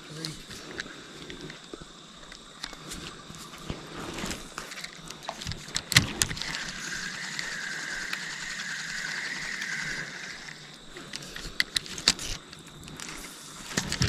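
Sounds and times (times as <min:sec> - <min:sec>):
fishing reel gears whirring: 0:02.3 - 0:14.0
fishing reel clicks: 0:04.6 - 0:14.0.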